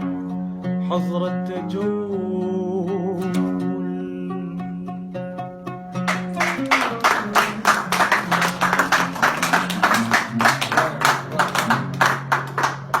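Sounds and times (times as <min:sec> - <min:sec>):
audience clapping: 0:06.0 - 0:13.0.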